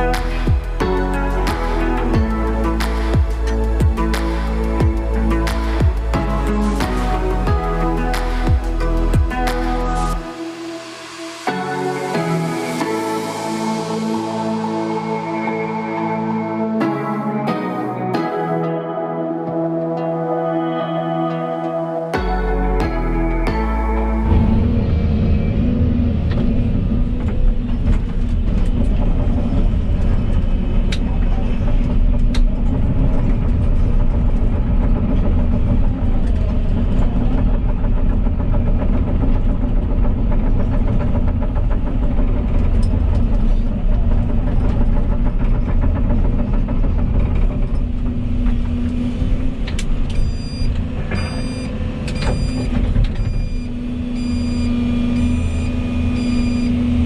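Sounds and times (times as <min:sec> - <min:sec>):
hydraulics working: 0:00.0 - 0:18.0, 0:21.3 - 0:57.0
excavator diesel engine running: 0:00.0 - 0:18.8, 0:19.5 - 0:57.0
short high beeps: 0:50.2 - 0:56.8.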